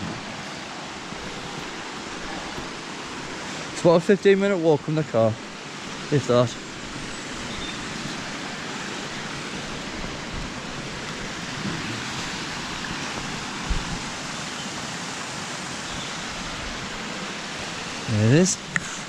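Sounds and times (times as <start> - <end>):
waterfall rushing: 0.0 - 19.0
low thump: 13.6 - 14.1.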